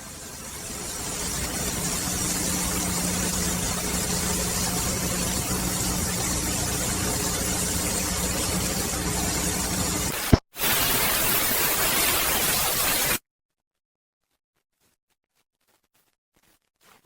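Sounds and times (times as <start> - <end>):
low even hum: 0.0 - 10.1
steady hiss: 0.0 - 13.2.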